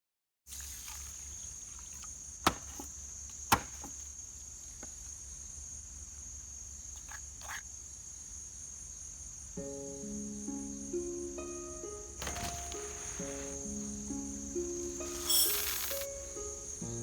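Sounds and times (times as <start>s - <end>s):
high-pitched insect chirring: 13.2s - 17.0s.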